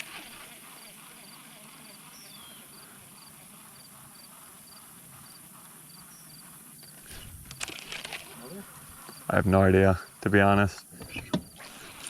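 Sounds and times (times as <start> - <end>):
cricket chirping: 0.4 - 9.4.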